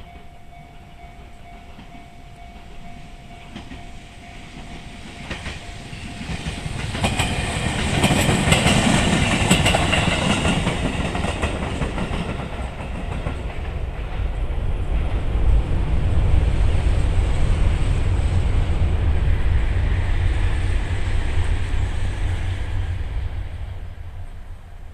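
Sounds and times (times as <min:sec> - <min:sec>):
high-speed train rumbling past: 0:00.0 - 0:24.9
train wheels clacking over rail joints: 0:01.6 - 0:14.4.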